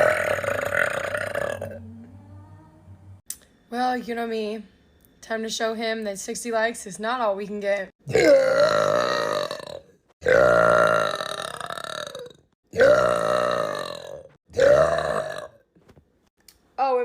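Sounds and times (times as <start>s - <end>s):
woman burping loudly: 0.0s - 1.8s, 8.1s - 15.6s.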